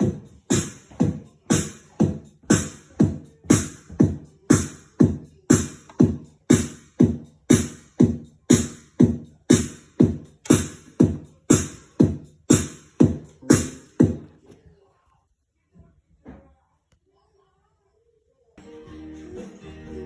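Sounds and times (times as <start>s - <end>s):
electronic drum beat loop: 0.0s - 14.4s.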